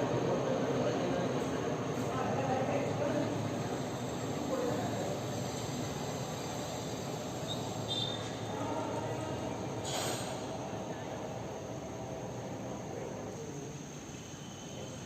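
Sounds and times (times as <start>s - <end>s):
distant train rumble: 0.0s - 15.0s
brief hiss: 9.7s - 10.7s.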